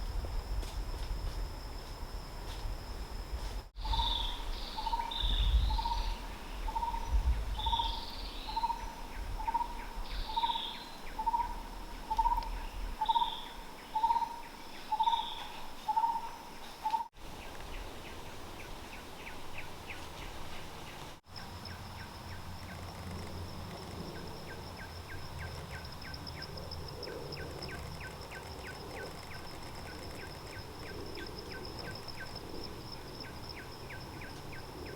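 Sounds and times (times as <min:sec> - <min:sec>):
insects buzzing: 0:00.0 - 0:34.9
bird hooting: 0:03.8 - 0:07.0
rapid faint ticking: 0:21.3 - 0:34.4.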